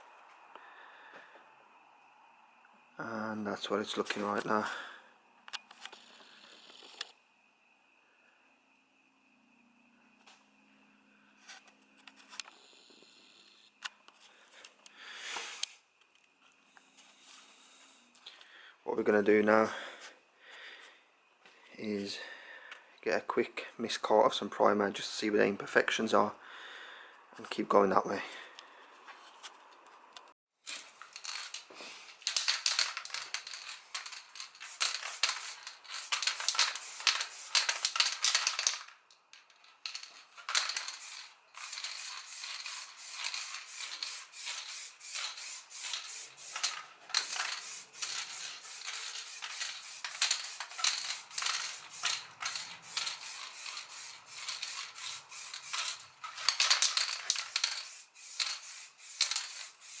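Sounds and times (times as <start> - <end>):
sandpaper rubbing plastic: 32.3 - 38.7, 39.9 - 60.0.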